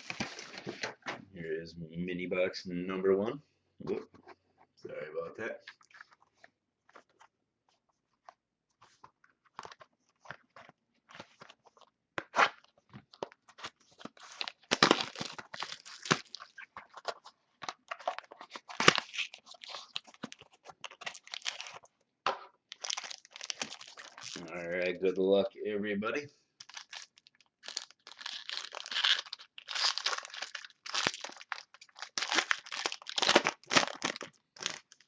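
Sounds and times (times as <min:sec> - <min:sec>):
wrapper crinkling and tearing: 0:13.2 - 0:21.9, 0:22.7 - 0:24.8, 0:26.6 - 0:35.0.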